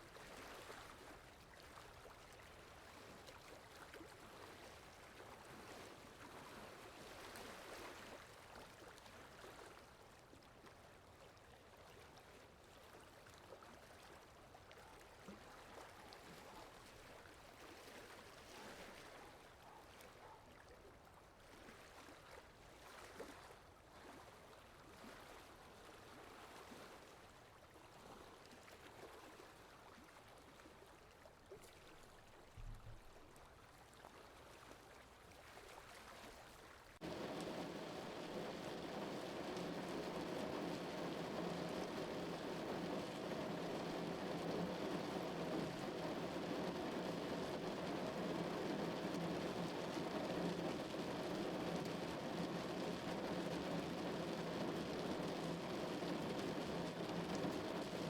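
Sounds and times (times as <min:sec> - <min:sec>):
soft water sound: 0:28.4 - 0:58.0
steady rainfall: 0:37.0 - 0:58.0.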